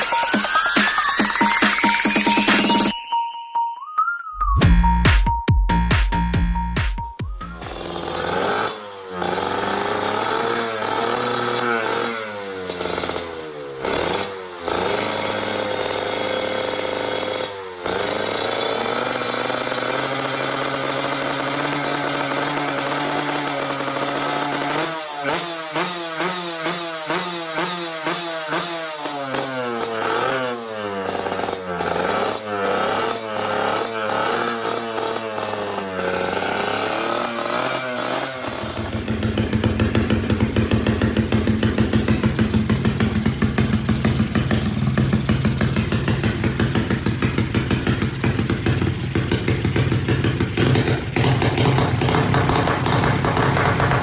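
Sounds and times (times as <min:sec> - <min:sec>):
motorcycle engine revving: 0:07.3 - 0:54.0.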